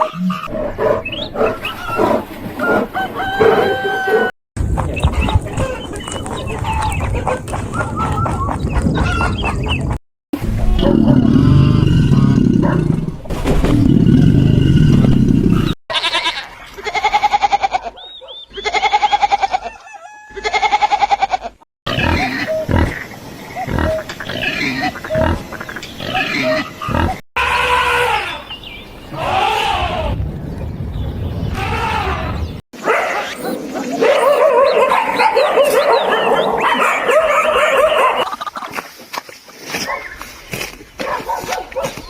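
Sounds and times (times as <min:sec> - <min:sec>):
rising-and-falling animal calls: 0:00.0 - 0:04.3, 0:10.5 - 0:13.1, 0:21.9 - 0:30.3, 0:31.4 - 0:38.5
loud low rough animal call: 0:10.4 - 0:15.8, 0:23.6 - 0:32.6.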